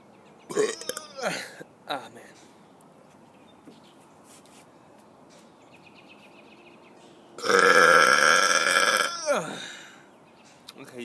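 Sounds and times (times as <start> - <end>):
man burping: 0.5 - 1.6, 7.4 - 9.8.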